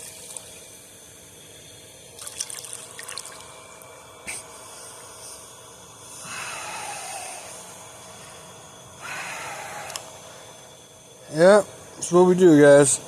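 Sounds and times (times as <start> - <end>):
water splashing and dripping: 2.2 - 3.4
person breathing out heavily: 4.2 - 10.8.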